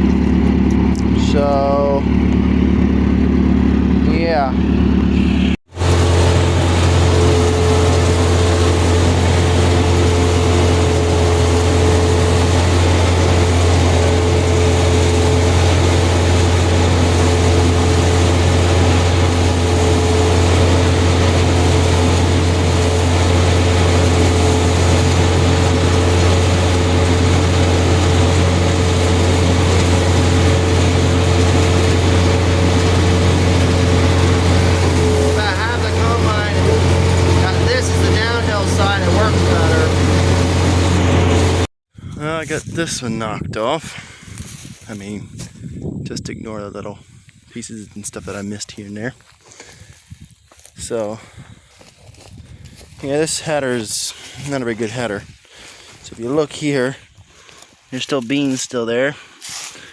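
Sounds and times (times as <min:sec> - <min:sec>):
combine harvester engine drone: 0:00.0 - 0:41.7
steady machine whine: 0:02.0 - 0:41.7.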